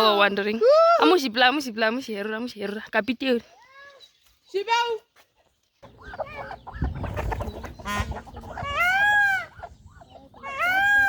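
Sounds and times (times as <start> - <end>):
chickens clucking and calling: 5.4 - 11.0
loud drawn-out chicken call: 5.8 - 11.0.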